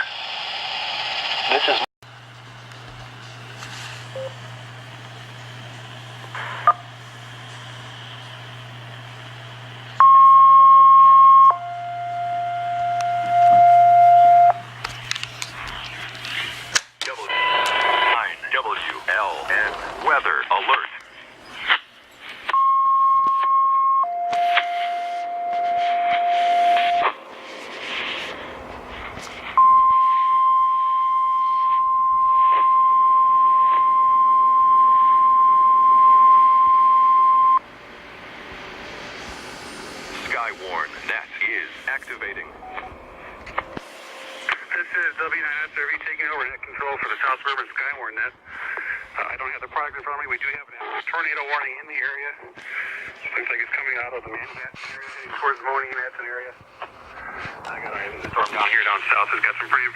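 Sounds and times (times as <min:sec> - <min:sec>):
receiver hiss: 0:00.0 - 0:59.9
radio clicks and crackle: 0:01.4 - 0:10.0, 0:14.6 - 0:22.6, 0:41.1 - 0:43.9, 0:44.5 - 0:59.9
two-tone radio alert: 0:06.3 - 0:06.9, 0:10.0 - 0:14.8, 0:17.1 - 0:21.0, 0:22.5 - 0:27.2, 0:29.6 - 0:37.6, 0:40.3 - 0:43.0, 0:57.7 - 0:59.9.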